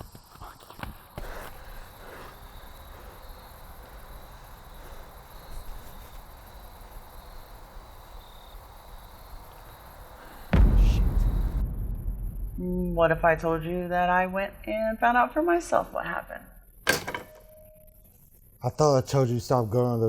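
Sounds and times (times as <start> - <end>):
insects trilling: 0.0 - 20.0
low rumble and hiss: 10.5 - 16.8.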